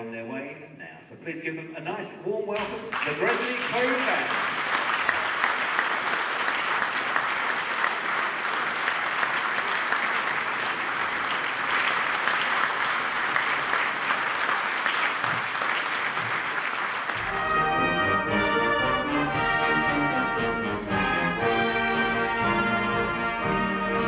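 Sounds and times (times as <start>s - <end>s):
audience applauding: 2.6s - 18.0s
brass band playing: 17.1s - 24.0s.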